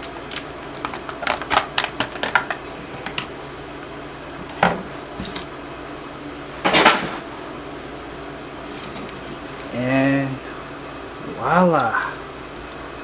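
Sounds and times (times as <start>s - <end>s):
toy model and packaging clicking: 0.3s - 2.6s.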